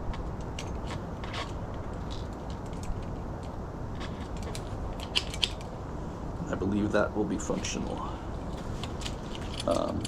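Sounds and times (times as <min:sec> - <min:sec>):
low background rumble: 0:00.0 - 0:10.0
small metal parts clicking: 0:00.1 - 0:05.7, 0:08.6 - 0:10.0.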